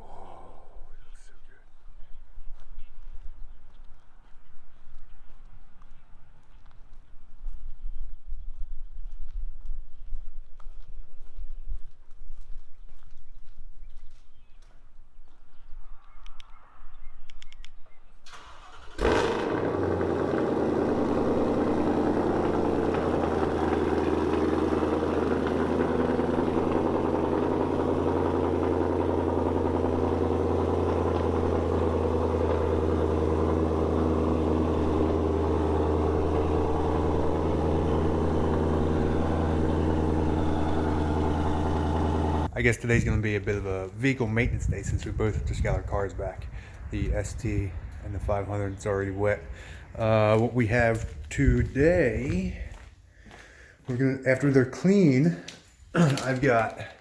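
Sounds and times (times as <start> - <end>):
car engine starting and idling: 18.2 - 43.8.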